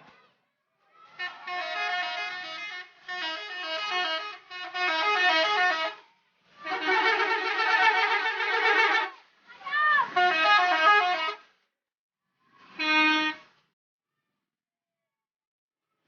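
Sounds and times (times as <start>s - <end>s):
musical air horn melody: 1.2s - 6.0s, 6.6s - 9.2s, 10.1s - 11.5s, 12.7s - 13.6s.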